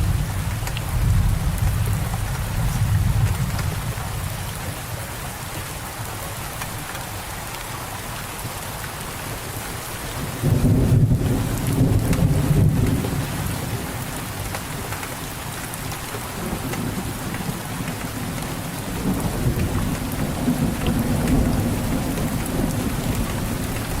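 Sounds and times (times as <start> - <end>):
thunder rumbling: 0.0 - 5.1, 10.2 - 14.4, 16.4 - 24.0
steady rain: 0.0 - 24.0.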